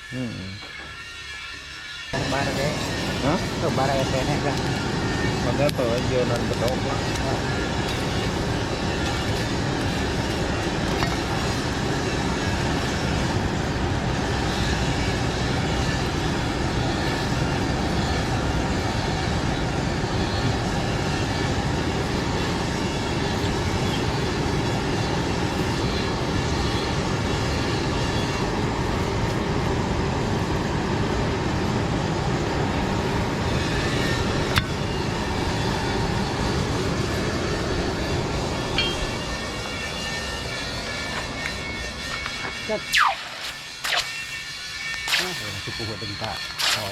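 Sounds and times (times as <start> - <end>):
electric air blower roaring: 0.0 - 46.9
sharp click: 46.3 - 46.9.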